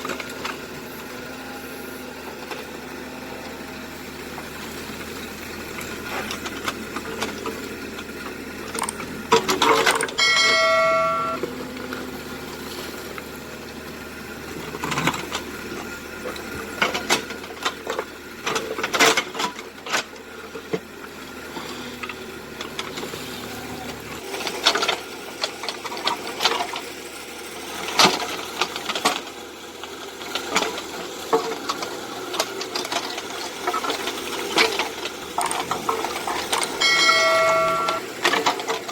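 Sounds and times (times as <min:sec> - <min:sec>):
diesel engine running: 0:00.0 - 0:38.9
knocks and clanks: 0:08.7 - 0:11.5
short metallic ring: 0:10.2 - 0:11.4, 0:36.8 - 0:38.0.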